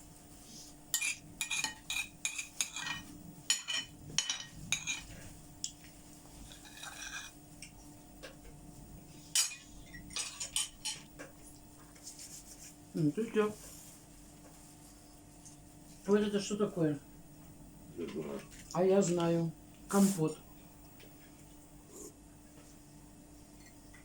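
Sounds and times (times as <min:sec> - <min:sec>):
faint steady hum: 0:00.0 - 0:24.0
dishes and cutlery clinking: 0:01.0 - 0:05.2, 0:06.4 - 0:07.4, 0:09.3 - 0:11.2.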